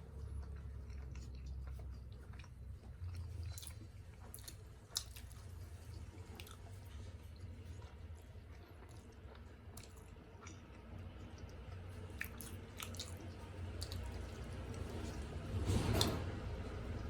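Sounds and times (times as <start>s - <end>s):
close-up chewing: 0.0s - 17.0s.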